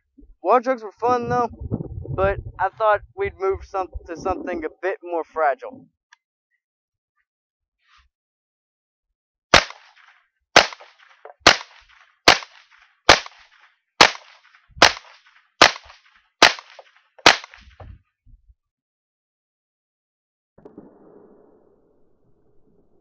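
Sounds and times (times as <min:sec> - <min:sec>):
rifle shots: 0:09.5 - 0:17.8.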